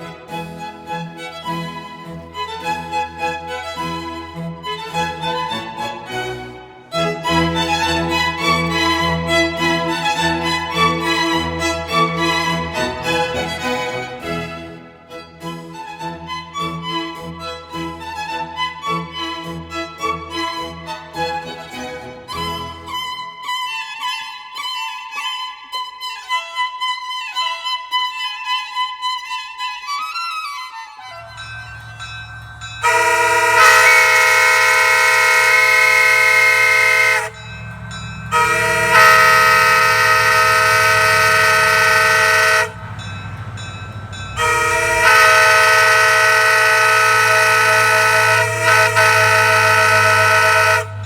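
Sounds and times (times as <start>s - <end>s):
violin music: 0.0s - 28.4s, 30.9s - 51.0s
air train horn blasts: 32.4s - 51.0s.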